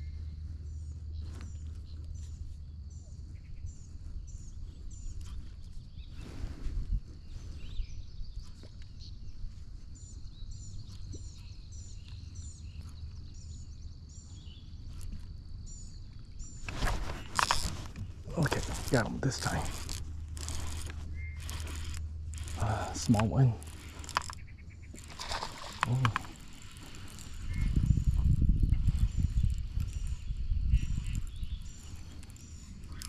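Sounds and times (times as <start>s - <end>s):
songbird chirping: 0.0s - 33.0s
rustling noise: 16.6s - 33.0s.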